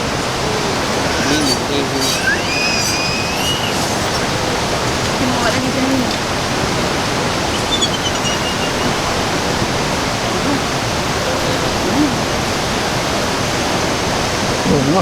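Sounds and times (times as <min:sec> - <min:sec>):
loud rush of flowing water: 0:00.0 - 0:15.0.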